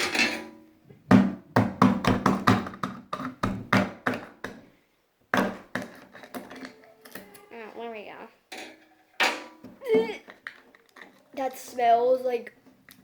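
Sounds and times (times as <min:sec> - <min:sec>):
knocks and taps on plastic tub: 0:01.1 - 0:04.6.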